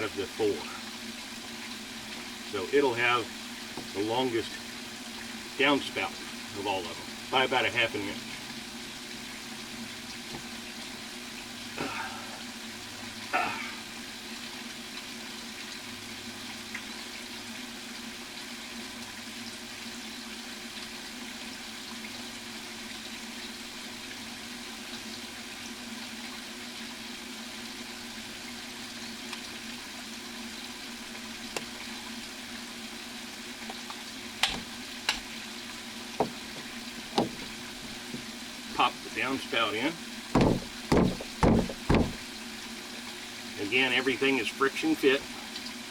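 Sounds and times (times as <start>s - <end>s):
plastic pipe knocking: 36.2s - 38.3s, 40.3s - 42.3s
steady hiss: 43.5s - 45.8s.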